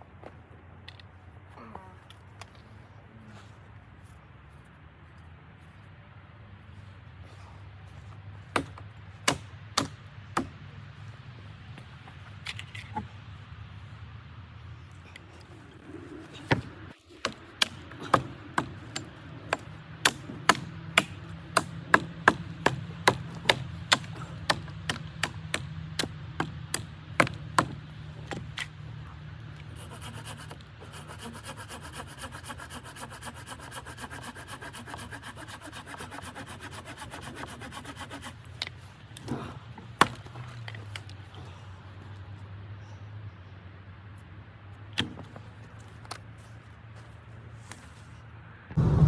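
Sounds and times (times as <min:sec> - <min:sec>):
sharp knocks: 0:16.5 - 0:28.6
steady hum: 0:48.7 - 0:49.0.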